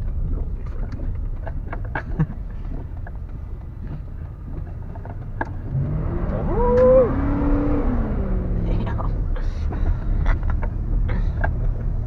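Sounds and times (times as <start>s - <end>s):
light clicks and rattles: 0.0s - 5.7s
vehicle engine and road rumble: 0.0s - 12.0s
engine revving up: 5.6s - 9.2s.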